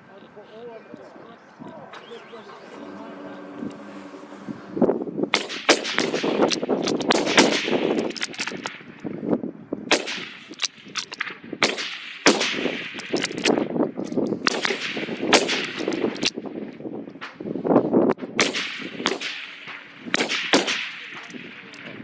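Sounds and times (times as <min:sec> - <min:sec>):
rifle shots with echo: 0:05.3 - 0:09.0, 0:09.9 - 0:13.7, 0:14.4 - 0:16.4, 0:18.2 - 0:22.0.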